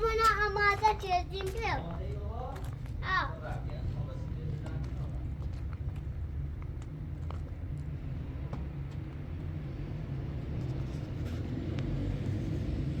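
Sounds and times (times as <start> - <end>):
vehicle engine running: 4.1 - 13.0.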